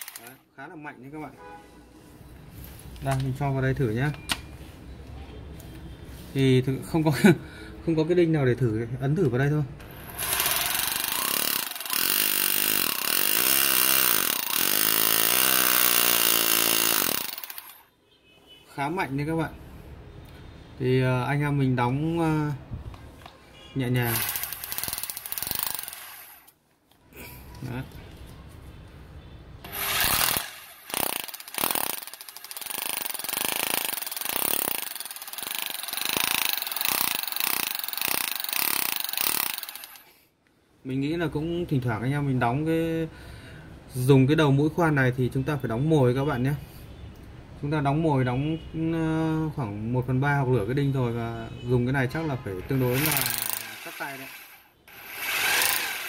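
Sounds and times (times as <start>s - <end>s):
hammer drill whining and rattling: 0.0s - 0.3s, 9.8s - 17.8s, 24.1s - 26.5s, 29.6s - 40.1s, 52.8s - 56.0s.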